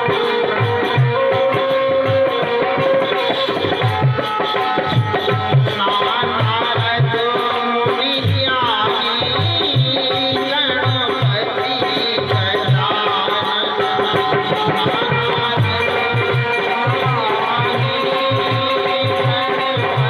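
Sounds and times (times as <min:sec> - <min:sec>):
hand drum beat: 0:00.0 - 0:20.0.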